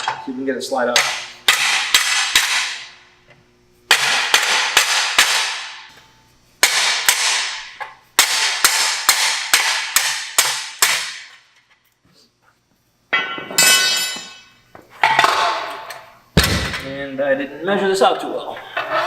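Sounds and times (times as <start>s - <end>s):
hammer striking metal axle: 1.0s - 2.9s, 3.9s - 5.9s.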